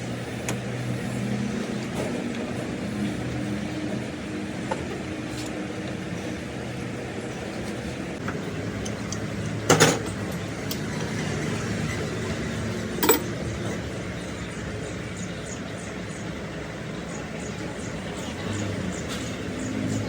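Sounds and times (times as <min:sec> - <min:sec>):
sharp metallic clanks: 0:13.0 - 0:13.4.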